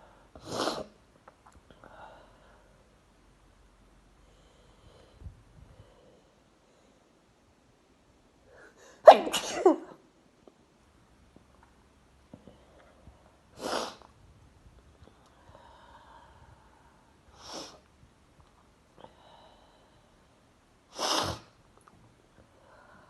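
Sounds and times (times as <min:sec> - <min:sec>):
faint breaths: 0:04.1 - 0:07.4, 0:14.9 - 0:17.9, 0:18.9 - 0:21.1, 0:22.4 - 0:23.0
person sneezing: 0:08.8 - 0:10.0, 0:21.0 - 0:21.6.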